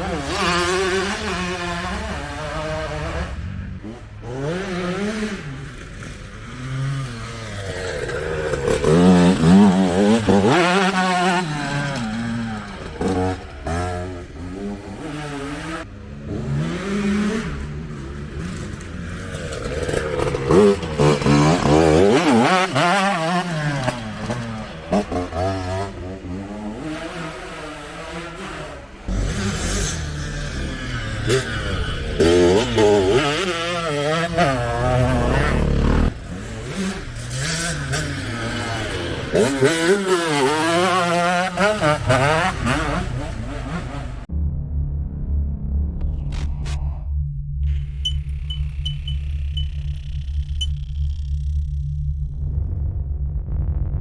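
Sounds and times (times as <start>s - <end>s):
motocross bike engine revving: 0.0s - 44.3s, 47.7s - 52.2s.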